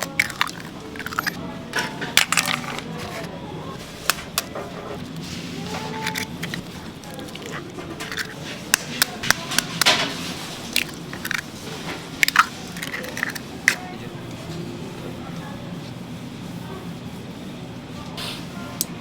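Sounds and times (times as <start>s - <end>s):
utensils and containers clattering: 0.0s - 14.0s.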